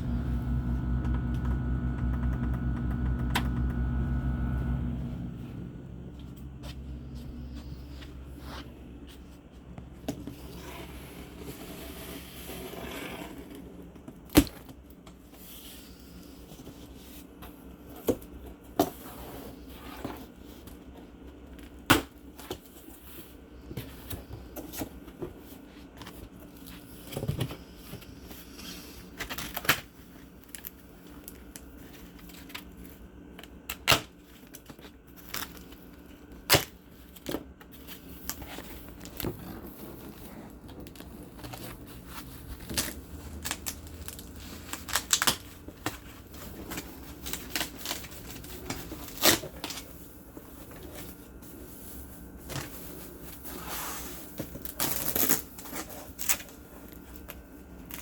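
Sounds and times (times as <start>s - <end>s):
packaging scraping and rustling: 34.2s - 58.0s.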